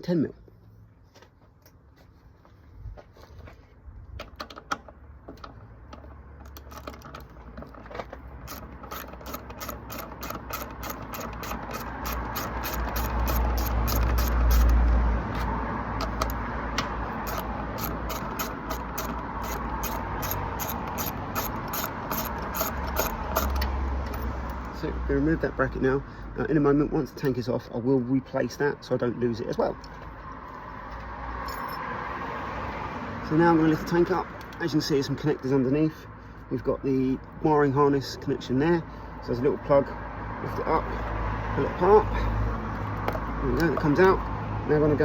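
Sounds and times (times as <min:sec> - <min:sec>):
socket ratchet clicking: 0:08.4 - 0:14.9, 0:16.0 - 0:16.4, 0:17.2 - 0:24.8.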